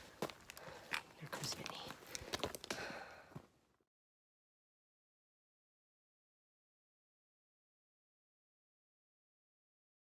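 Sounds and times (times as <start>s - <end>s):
faint footsteps on trail: 0.0s - 3.6s.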